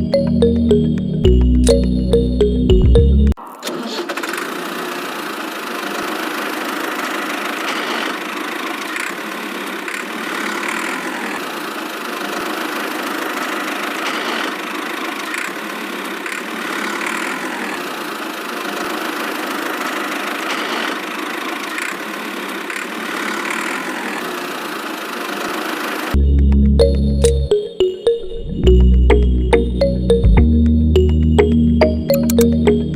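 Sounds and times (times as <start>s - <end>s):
small motor running: 4.3s - 26.2s.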